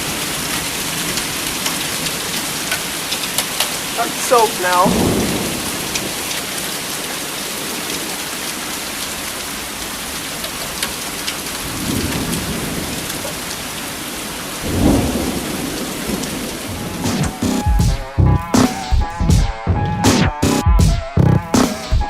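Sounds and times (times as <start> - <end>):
heavy rain pouring: 0.0 - 19.2
thunder rumbling: 4.0 - 6.2, 11.6 - 13.4, 14.6 - 18.4.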